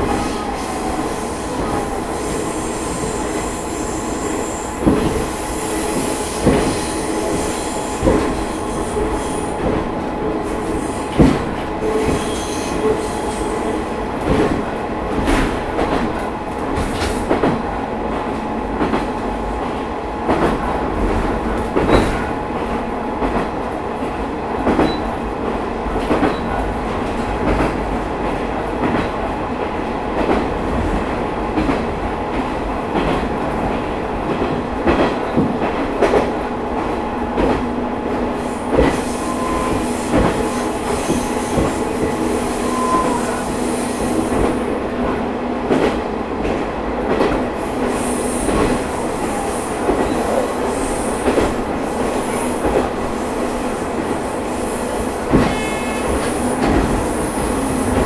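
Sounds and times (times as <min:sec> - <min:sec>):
rail-joint clicks: 0:20.3 - 0:22.3, 0:24.6 - 0:25.2, 0:55.2 - 0:58.0
high-pitched wheel squeal: 0:39.1 - 0:39.9, 0:42.0 - 0:43.4.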